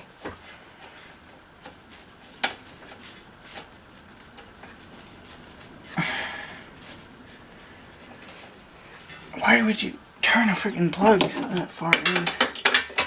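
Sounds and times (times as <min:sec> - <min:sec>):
metal tools clinking and tapping: 0:10.9 - 0:13.0.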